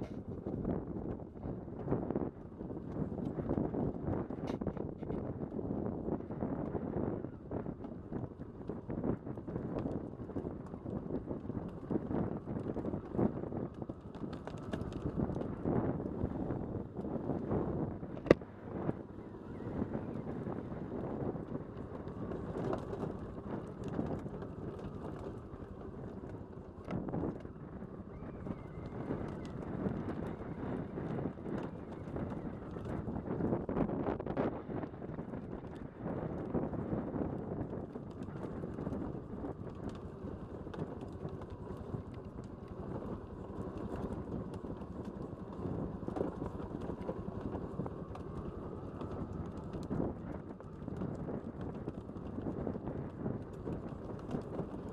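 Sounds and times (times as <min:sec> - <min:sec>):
wind buffeting microphone: 0:00.0 - 0:54.9
atv chassis rattling and knocking: 0:08.6 - 0:18.4, 0:19.8 - 0:33.7, 0:34.8 - 0:54.9
tyres rumbling on gravel: 0:08.6 - 0:18.9, 0:19.6 - 0:54.9.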